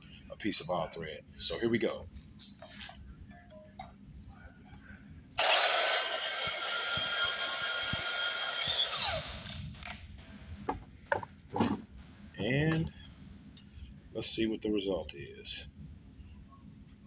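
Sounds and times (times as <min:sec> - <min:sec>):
power tool motor whine: 0:05.4 - 0:09.8.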